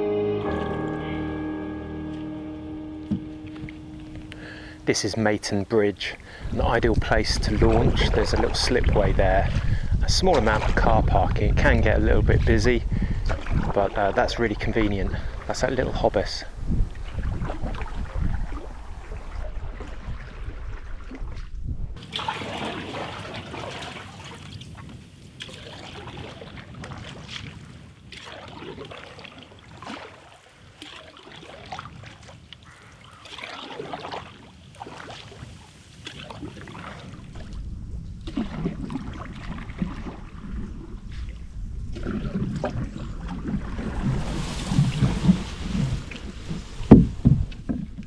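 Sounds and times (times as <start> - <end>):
low rumble: 0.0 - 5.5
canoe paddle strokes in water: 0.4 - 6.5, 15.0 - 48.0
water trickling from paddle: 0.5 - 6.5, 16.9 - 48.0.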